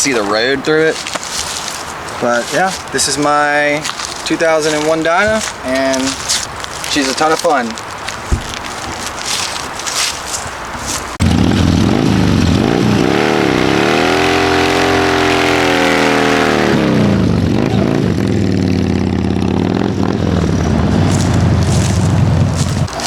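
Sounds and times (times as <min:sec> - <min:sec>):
motorcycle engine revving: 0:11.2 - 0:23.0.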